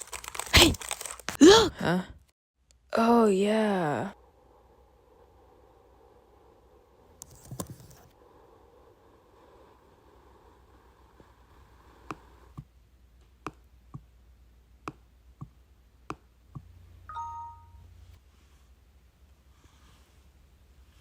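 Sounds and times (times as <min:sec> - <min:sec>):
bright chime ding: 0:17.1 - 0:17.8.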